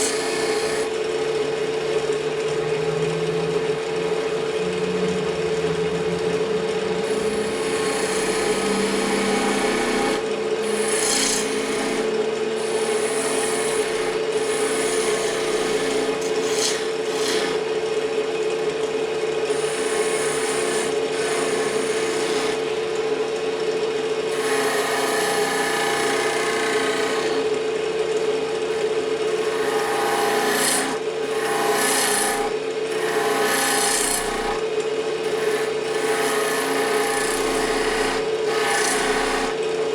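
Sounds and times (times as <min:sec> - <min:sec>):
tool scraping spinning wood: 0:00.0 - 0:39.9
wood lathe humming: 0:00.0 - 0:39.9.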